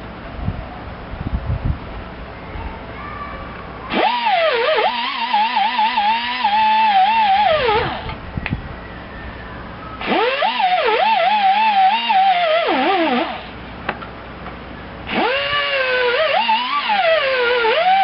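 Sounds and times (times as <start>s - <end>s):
electric power tool whining: 3.9s - 8.2s, 10.0s - 13.6s, 15.1s - 18.0s.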